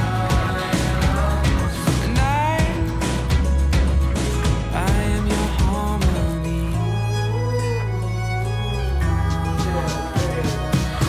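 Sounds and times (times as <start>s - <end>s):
music with steady drum beat: 0.0s - 6.6s, 9.6s - 11.0s.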